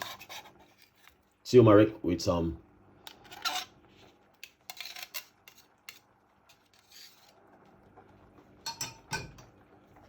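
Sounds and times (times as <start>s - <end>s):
utensil scraping: 0.0s - 1.4s, 3.1s - 7.6s
kitchen utensils clinking: 8.6s - 9.5s.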